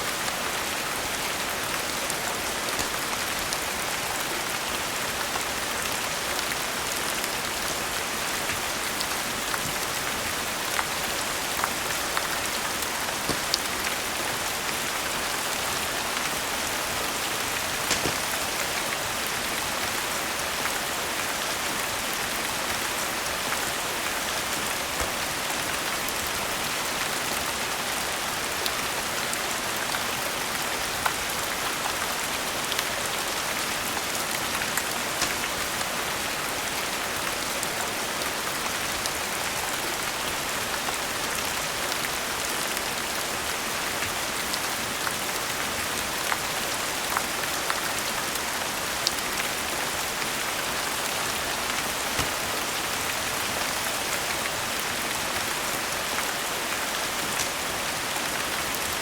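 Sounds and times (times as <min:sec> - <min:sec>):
steady rain hiss: 0:00.0 - 0:59.0.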